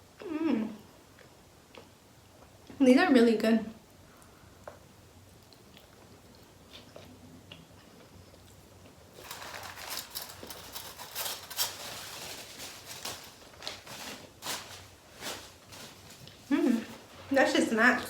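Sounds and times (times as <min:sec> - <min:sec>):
crackly wet chewing: 0:01.1 - 0:02.7, 0:04.1 - 0:09.2.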